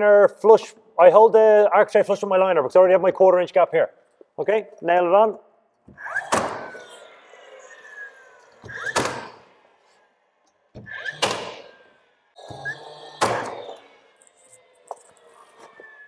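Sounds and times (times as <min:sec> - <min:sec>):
nails driven into wood: 0:05.9 - 0:07.1, 0:08.6 - 0:09.6, 0:10.7 - 0:14.0.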